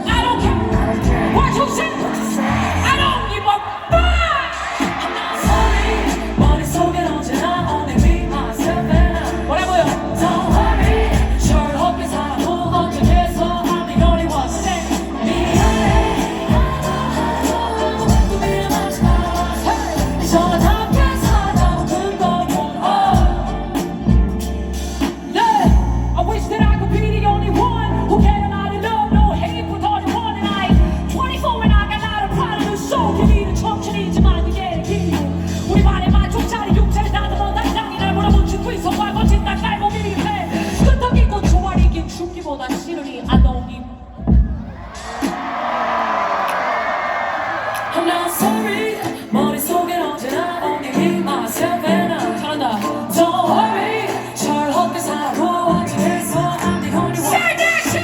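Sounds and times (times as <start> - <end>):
person singing: 0.0 - 43.5, 47.7 - 58.0
hip-hop beat with heavy bass: 0.0 - 45.6
live concert music: 0.0 - 58.0.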